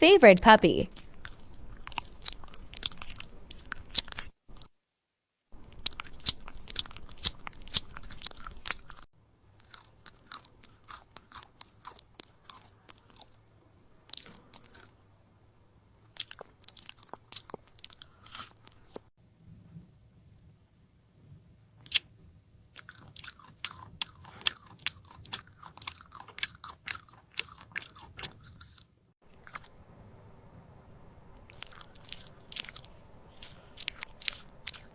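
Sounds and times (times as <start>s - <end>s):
puppies crunching food: 0.9s - 4.7s, 5.6s - 13.4s, 22.8s - 29.7s, 31.4s - 34.9s.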